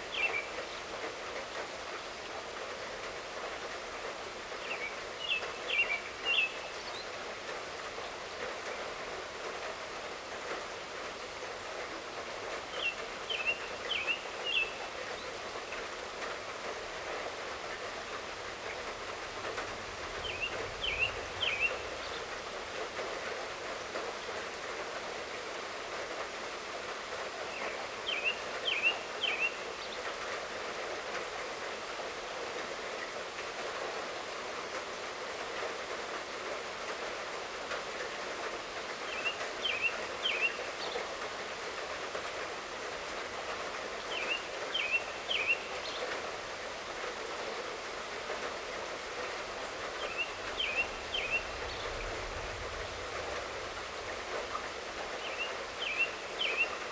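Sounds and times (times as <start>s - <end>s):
light rain falling: 0.0s - 56.9s
bird chirping call: 20.2s - 22.2s, 44.1s - 46.0s, 50.0s - 51.9s, 55.2s - 56.8s.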